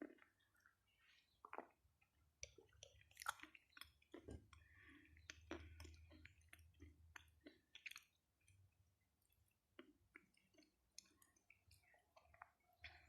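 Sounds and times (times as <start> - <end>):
close-up chewing crunches: 0.0 - 8.6.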